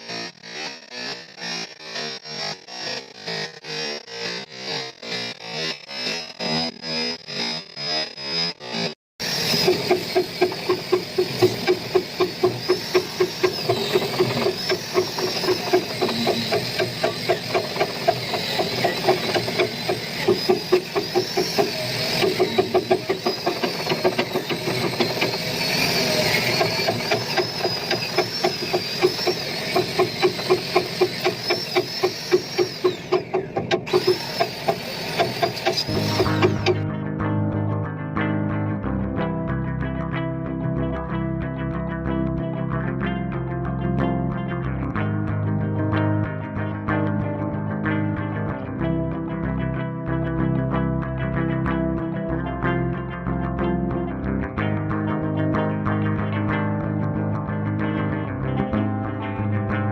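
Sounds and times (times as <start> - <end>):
angle grinder wire brush on metal: 5.1 - 36.8.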